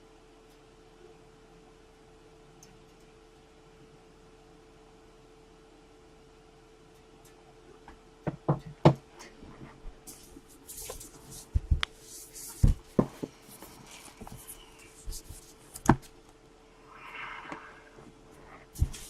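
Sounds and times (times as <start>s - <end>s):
crinkly rustling: 9.4s - 16.2s.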